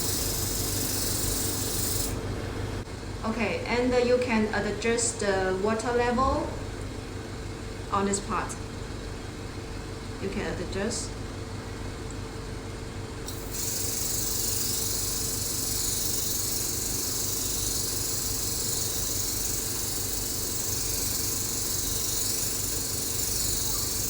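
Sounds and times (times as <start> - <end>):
spray mist gun hissing: 0.0 - 2.2, 13.3 - 24.0.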